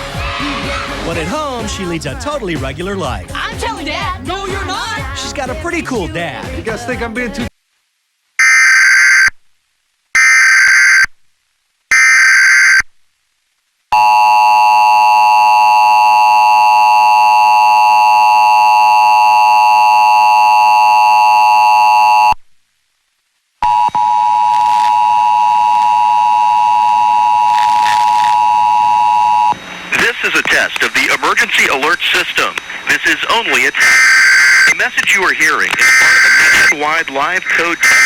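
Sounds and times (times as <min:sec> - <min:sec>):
steady single tone: 0:23.6 - 0:29.6
screeching digital data bursts: 0:35.8 - 0:36.8.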